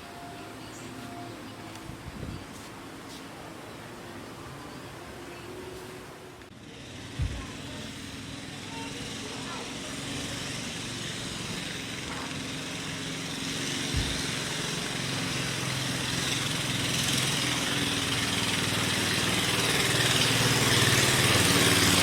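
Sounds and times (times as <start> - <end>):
engine running: 6.0 - 22.0
low thump: 14.0 - 14.4.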